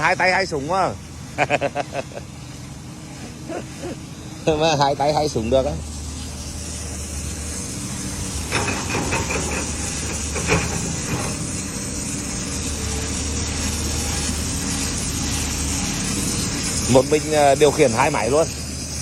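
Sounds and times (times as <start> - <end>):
wire saw cutting stone: 5.1 - 19.0.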